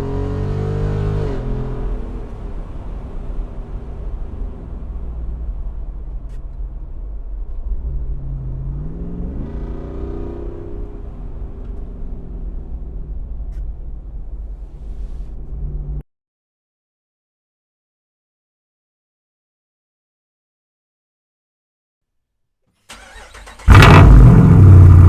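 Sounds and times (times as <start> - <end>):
car engine idling and revving: 0.0 - 16.0, 22.9 - 25.0.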